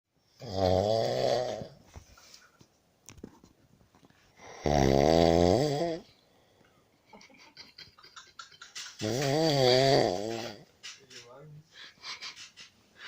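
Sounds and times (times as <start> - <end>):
loud snoring: 0.4 - 1.8, 4.4 - 6.1, 9.0 - 10.6
quiet breathing: 1.5 - 2.8, 6.0 - 7.0, 11.6 - 13.0.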